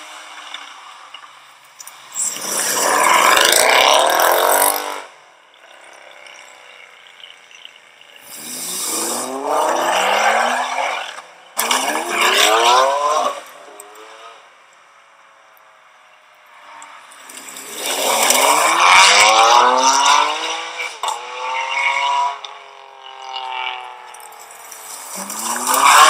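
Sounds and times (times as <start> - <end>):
car engine accelerating hard: 17.5 - 24.2.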